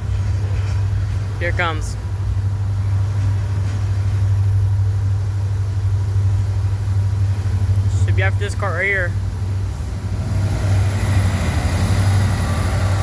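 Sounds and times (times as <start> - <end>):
diesel locomotive engine droning: 0.0 - 13.0.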